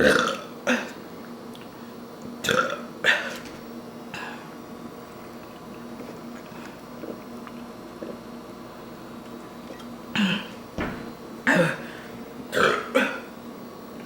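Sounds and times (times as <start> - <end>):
person burping: 0.0 - 1.0, 2.4 - 3.4, 10.1 - 10.6, 11.4 - 11.9, 12.5 - 13.3
room hum: 0.0 - 14.0
low thump: 10.8 - 11.2.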